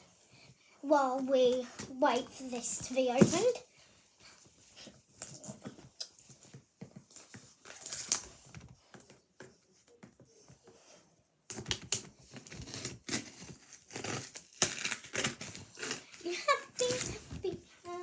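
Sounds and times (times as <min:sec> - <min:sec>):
plastic and cardboard crinkling: 0:02.0 - 0:03.6, 0:04.7 - 0:09.2, 0:11.5 - 0:18.0.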